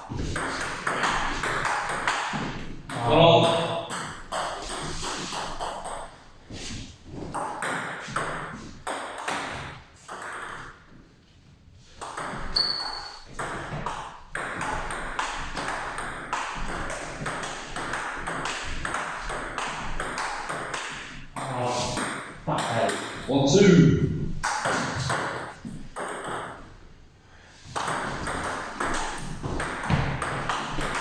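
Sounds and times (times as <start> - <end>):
short high squeak: 12.6 - 13.2.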